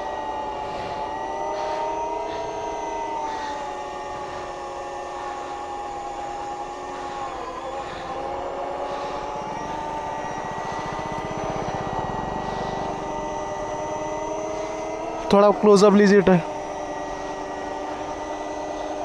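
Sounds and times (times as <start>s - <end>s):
electric motor whining: 0.0s - 19.0s
rough low rumble: 7.1s - 15.4s.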